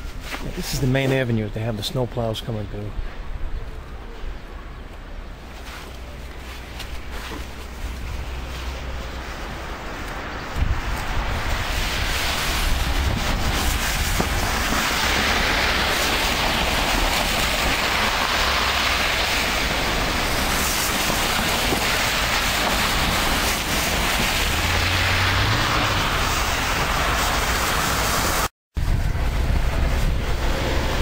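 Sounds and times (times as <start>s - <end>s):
wind buffeting microphone: 9.1s - 27.8s, 28.7s - 31.0s.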